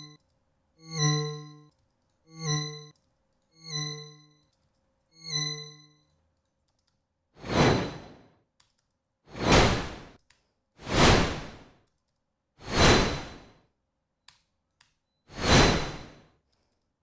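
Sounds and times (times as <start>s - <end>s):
loud whoosh of noise: 9.4s - 10.1s, 10.8s - 11.6s, 12.6s - 13.4s, 15.4s - 16.2s.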